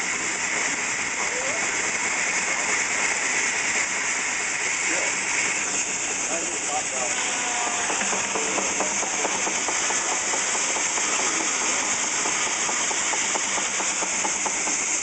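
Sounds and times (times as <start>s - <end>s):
steam engine hissing with even beat: 0.0s - 15.0s.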